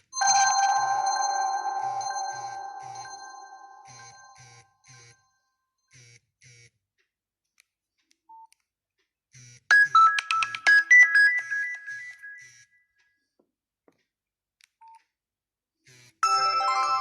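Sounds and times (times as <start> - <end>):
phone ringtone electronic notes: 0.0 - 5.1, 9.7 - 12.6, 16.2 - 17.0.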